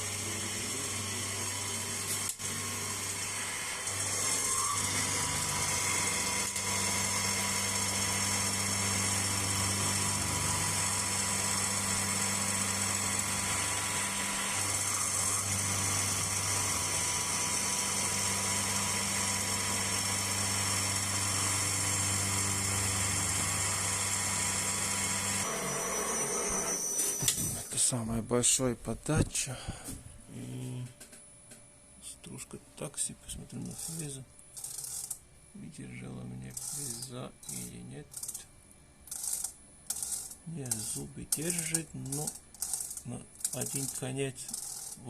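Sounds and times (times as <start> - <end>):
milling machine cutting: 0.0 - 27.7, 36.5 - 38.4, 39.1 - 45.0
high cutting whine: 30.2 - 45.0.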